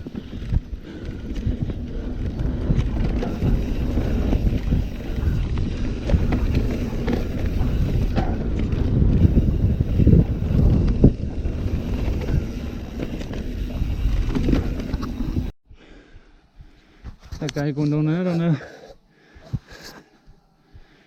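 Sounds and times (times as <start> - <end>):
bike knocking and rattling: 0.0 - 15.5
tyres rumbling on dirt: 0.0 - 15.5
wind buffeting microphone: 0.0 - 15.5.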